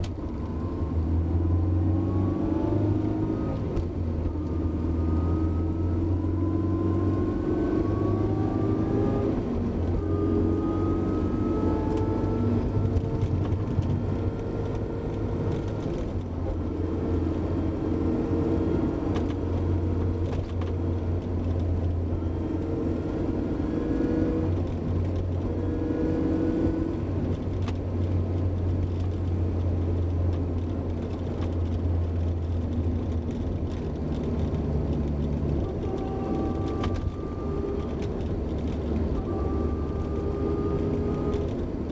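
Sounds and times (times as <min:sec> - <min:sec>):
low car drone: 0:00.0 - 0:41.9.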